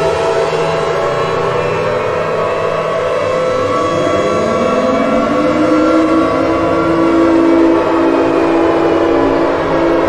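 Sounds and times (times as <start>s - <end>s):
warning sirens: 0.0s - 10.0s.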